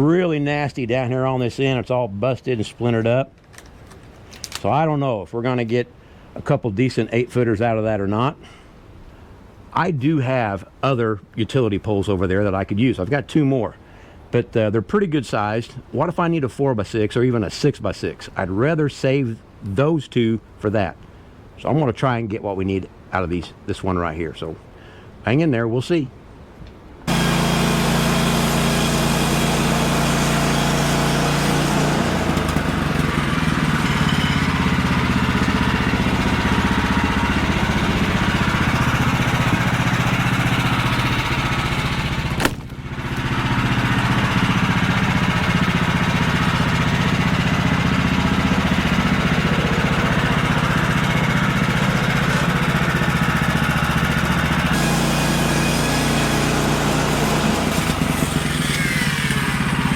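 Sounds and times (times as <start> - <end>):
small gasoline engine running: 27.1 - 59.9.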